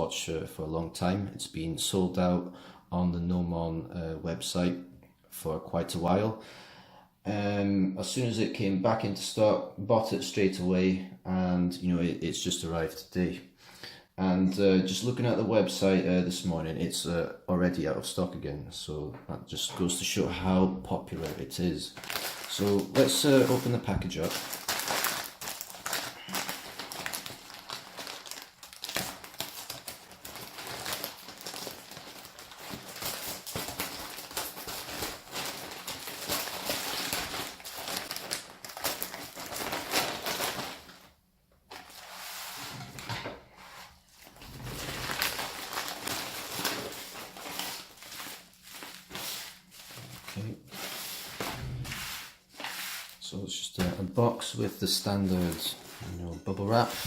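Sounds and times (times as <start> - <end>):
package wrapping tearing and crinkling: 22.0 - 41.1, 44.2 - 51.5.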